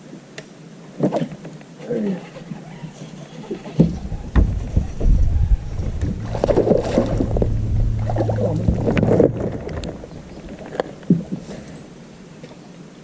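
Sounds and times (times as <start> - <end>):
knocks aboard a boat: 3.8 - 10.7
steady low hum: 4.0 - 11.7.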